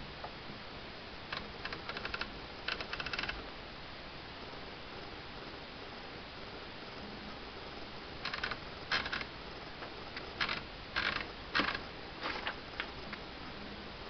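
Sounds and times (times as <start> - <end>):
manual typewriter clacking: 1.3 - 3.4, 8.3 - 9.3, 10.4 - 11.8.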